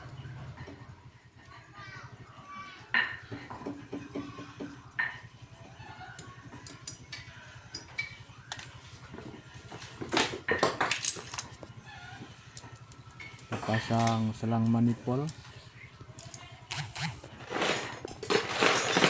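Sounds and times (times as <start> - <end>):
metal tools clinking: 6.1 - 8.6, 10.2 - 11.7, 12.6 - 19.0.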